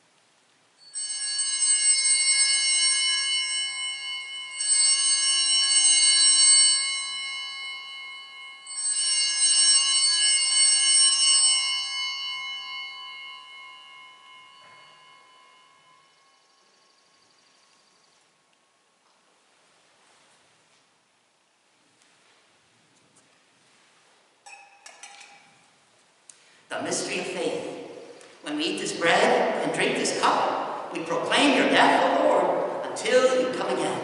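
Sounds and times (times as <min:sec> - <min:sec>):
altar bells jangling: 0:00.8 - 0:18.1.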